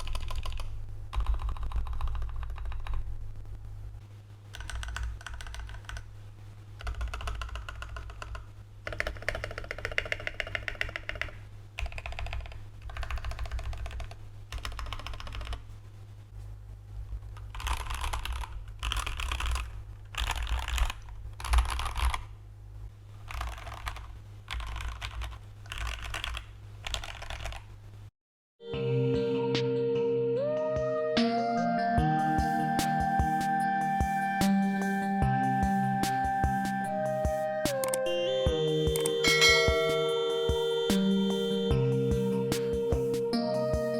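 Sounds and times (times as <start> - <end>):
typing on mechanical keyboard: 0.0 - 3.0, 4.5 - 6.0, 6.8 - 15.6, 17.4 - 22.3, 23.2 - 27.7.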